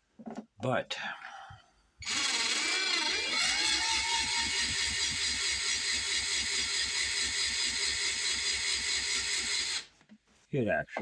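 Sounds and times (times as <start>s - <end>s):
drill press whine: 2.0s - 9.9s
file rod beating up and down: 2.0s - 9.9s.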